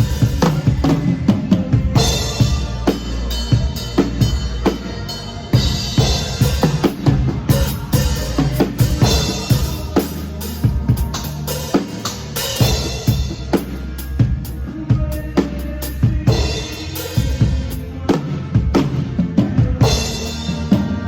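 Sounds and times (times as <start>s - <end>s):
drum kit hits: 0.0s - 15.2s
live band music: 0.0s - 21.0s
low bass notes: 0.0s - 21.0s.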